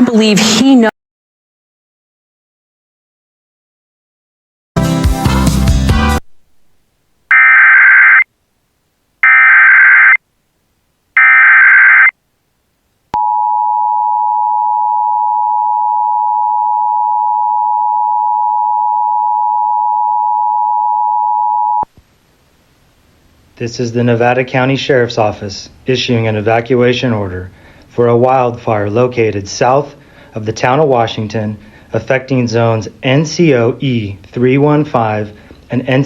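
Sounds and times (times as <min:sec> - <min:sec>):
two-tone attention signal: 0:07.3 - 0:08.2, 0:11.2 - 0:12.1
warbling data tones: 0:07.3 - 0:08.2, 0:09.2 - 0:10.2, 0:11.2 - 0:12.1.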